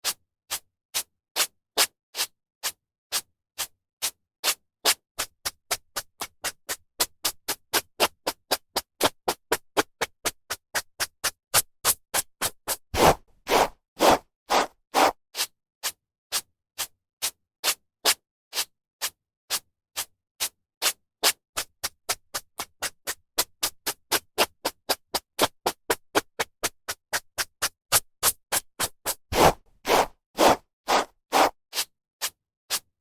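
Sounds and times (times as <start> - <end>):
hairbrush brushing hair: 29.3 - 31.5.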